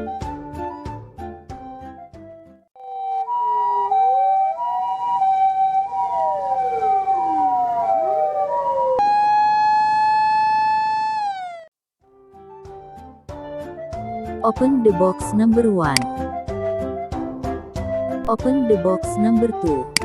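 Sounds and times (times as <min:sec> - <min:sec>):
steady siren tone: 0:02.8 - 0:11.7
two-tone hi-lo siren: 0:02.8 - 0:11.7
wailing sirens: 0:02.8 - 0:11.7.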